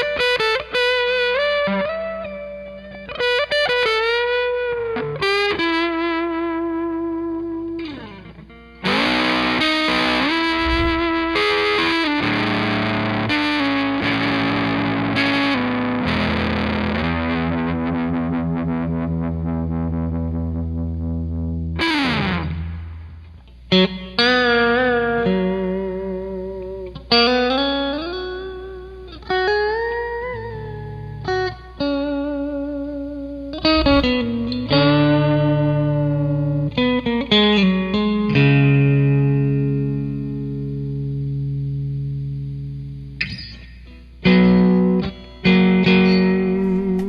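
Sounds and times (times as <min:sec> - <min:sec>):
overdriven electric guitar: 0:14.0 - 0:47.0.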